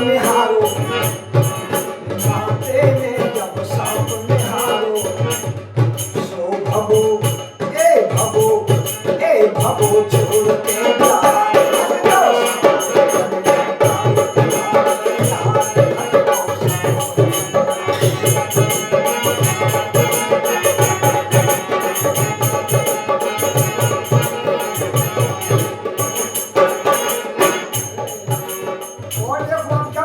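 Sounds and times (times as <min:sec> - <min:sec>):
jingling metal percussion: 0:00.0 - 0:30.0
steady drum beat: 0:09.6 - 0:30.0.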